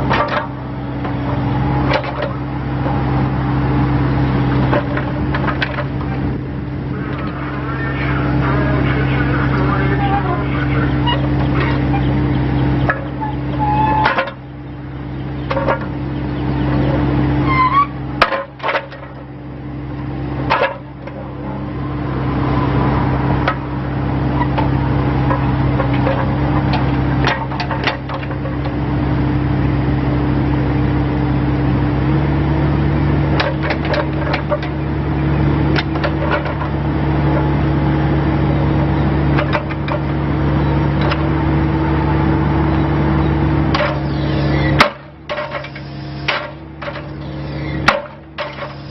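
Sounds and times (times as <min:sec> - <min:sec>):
excavator diesel engine running: 0:00.0 - 0:48.9
scattered knocks: 0:12.8 - 0:14.4, 0:15.2 - 0:16.0, 0:24.5 - 0:28.8, 0:43.7 - 0:47.2.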